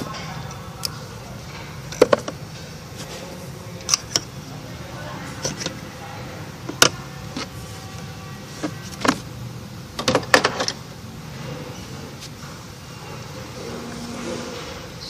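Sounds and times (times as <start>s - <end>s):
tools clicking and knocking: 0.1s - 2.4s, 3.8s - 4.3s, 6.7s - 7.5s.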